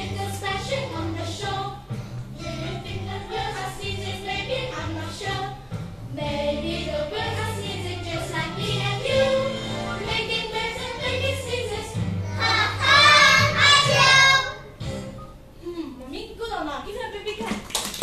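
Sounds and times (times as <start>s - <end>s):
children singing together: 0.0s - 5.6s, 6.2s - 14.7s.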